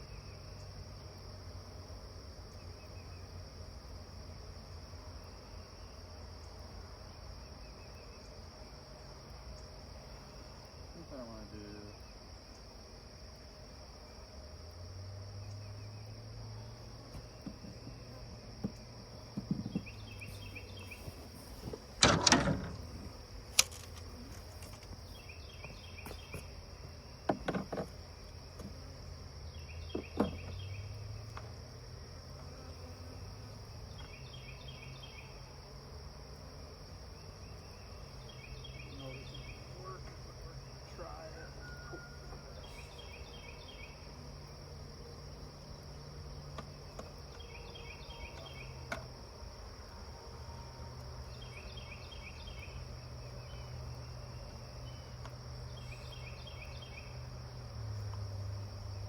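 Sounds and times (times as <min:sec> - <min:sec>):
cricket trill: 0:00.0 - 0:59.0
insect chirp: 0:00.0 - 0:59.0
knocks and bumps: 0:17.1 - 0:18.0, 0:18.6 - 0:20.0, 0:21.6 - 0:25.0, 0:27.2 - 0:28.0.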